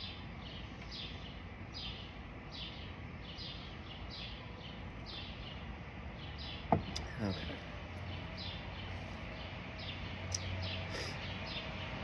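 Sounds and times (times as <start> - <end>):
songbird chirping: 0.0 - 12.0.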